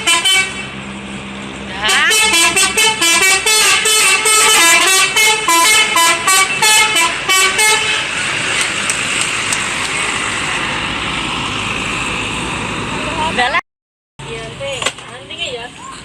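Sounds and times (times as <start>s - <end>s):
bus horn playing a tune: 0.0s - 0.8s, 1.8s - 8.3s
vehicle noise: 0.0s - 13.6s, 14.2s - 16.0s.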